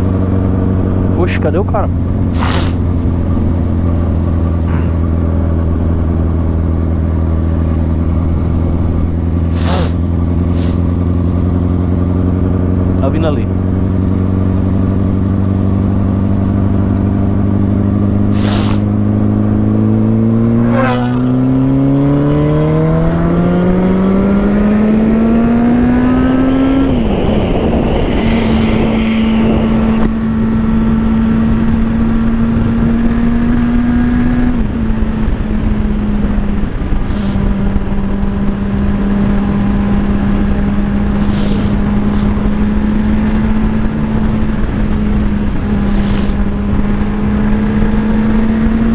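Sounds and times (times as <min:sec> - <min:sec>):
motorcycle engine revving: 0:00.0 - 0:48.9
wind rush: 0:24.5 - 0:48.0.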